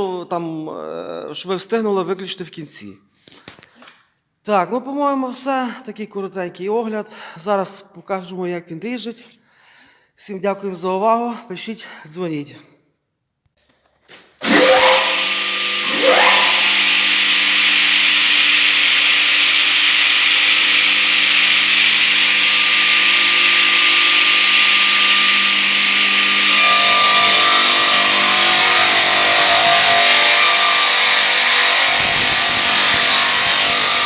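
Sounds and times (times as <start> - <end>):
saw motors whining: 14.4 - 34.0
saws cutting timber: 14.4 - 34.0.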